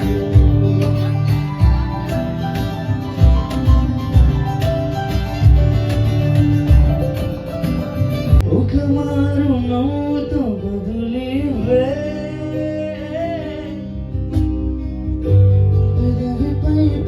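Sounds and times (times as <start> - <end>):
guitar: 0.0 - 17.0
steady bass: 0.0 - 17.0
person singing: 8.4 - 14.1, 15.8 - 17.0.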